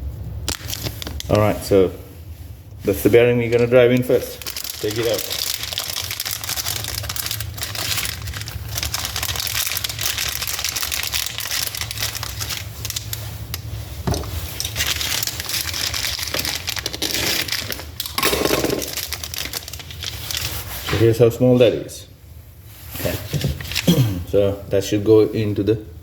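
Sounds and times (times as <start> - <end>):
steady low hum: 0.0 - 26.0
plastic packaging crinkling: 0.4 - 1.6, 3.4 - 21.1, 23.2 - 24.0.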